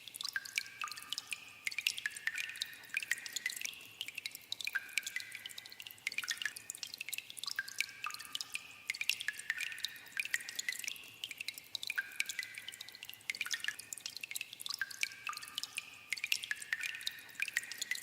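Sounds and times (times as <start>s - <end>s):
water dripping in a cave: 0.0s - 18.0s.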